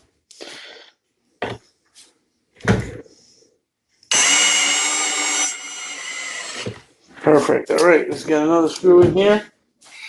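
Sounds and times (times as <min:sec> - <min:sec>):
power drill driving screw: 0:04.1 - 0:06.8.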